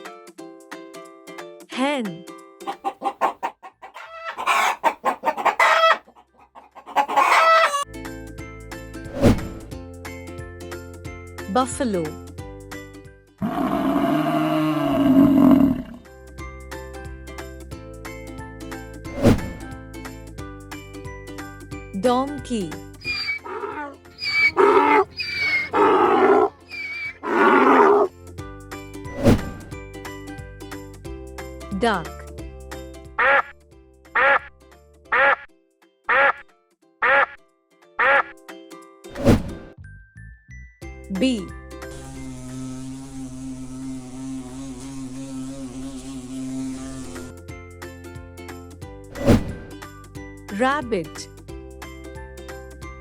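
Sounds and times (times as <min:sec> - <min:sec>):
children's music: 0:00.0 - 0:04.7, 0:06.7 - 0:13.4, 0:15.1 - 0:36.4, 0:37.0 - 0:42.2, 0:47.3 - 0:53.0
hen clucking and squawking: 0:02.6 - 0:07.8, 0:23.0 - 0:28.1, 0:33.2 - 0:33.5, 0:34.2 - 0:34.5, 0:35.1 - 0:35.5, 0:36.1 - 0:36.4, 0:37.0 - 0:37.4, 0:38.0 - 0:38.4
donkey braying: 0:02.6 - 0:07.9, 0:13.4 - 0:16.0, 0:23.0 - 0:28.1, 0:33.2 - 0:33.5, 0:34.2 - 0:34.5, 0:35.1 - 0:35.5, 0:36.1 - 0:36.4, 0:37.0 - 0:37.4, 0:38.0 - 0:38.4
brief sweep sound: 0:09.1 - 0:09.6, 0:19.1 - 0:19.6, 0:29.1 - 0:29.8, 0:39.1 - 0:39.7, 0:49.2 - 0:49.7.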